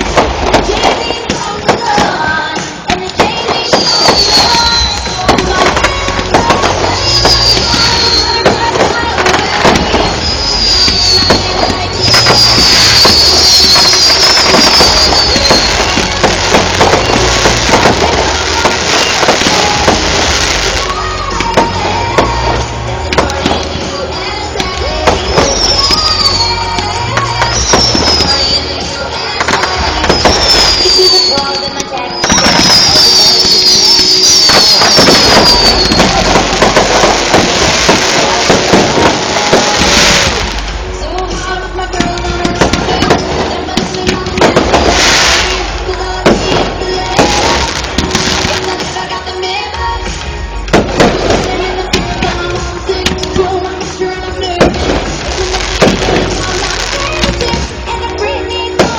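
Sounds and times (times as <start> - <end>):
fireworks bangs and crackling: 0.0 - 58.9
firework whistle falling: 3.3 - 22.3, 25.2 - 28.9, 29.9 - 40.6.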